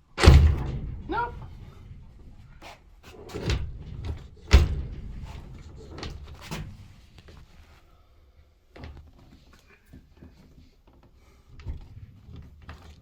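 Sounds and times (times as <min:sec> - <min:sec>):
latch bolt rattling: 0:00.1 - 0:02.5, 0:03.3 - 0:06.9.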